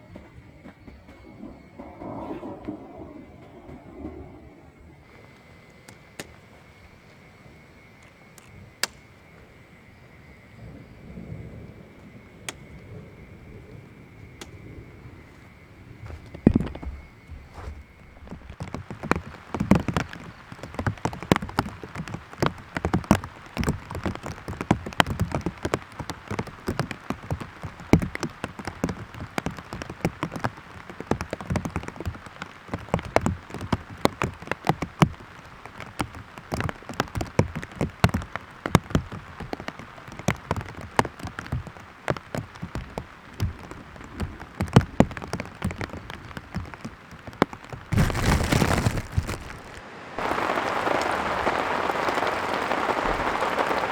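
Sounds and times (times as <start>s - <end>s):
rain hissing: 0.5s - 53.9s
raindrops tapping on surface: 8.0s - 9.1s, 12.0s - 12.8s, 15.3s - 53.9s.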